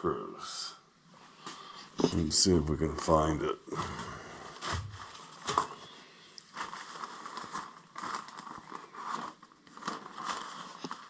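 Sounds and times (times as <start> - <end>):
hands rummaging and rustling: 4.6 - 11.0.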